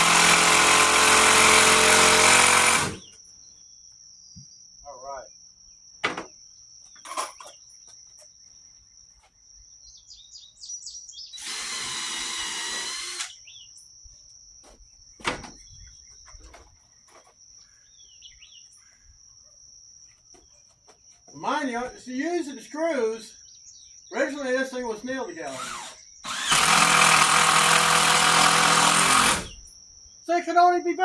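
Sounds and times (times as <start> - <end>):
power drill driving screw: 0.0 - 3.0, 11.4 - 13.4, 25.5 - 29.6
birds chirping: 0.7 - 30.2
sharp knocks: 6.0 - 6.3.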